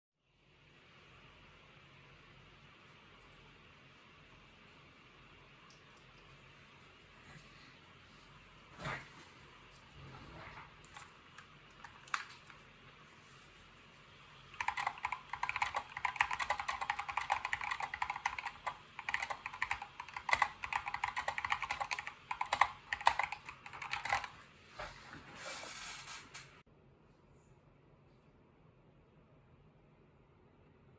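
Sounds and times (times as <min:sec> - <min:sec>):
fast typing on mechanical keyboard: 0:14.5 - 0:24.4.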